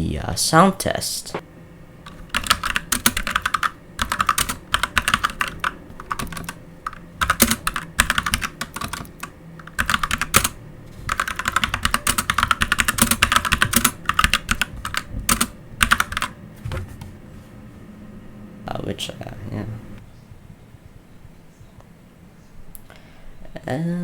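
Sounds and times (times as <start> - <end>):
mechanical keyboard key clacks: 2.1 - 16.3.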